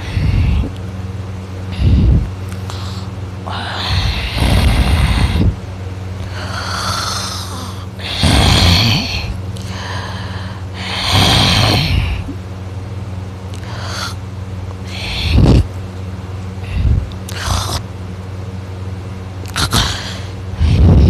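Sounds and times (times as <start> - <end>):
man snoring loudly: 3.5 - 5.5, 6.4 - 9.4, 10.8 - 12.2.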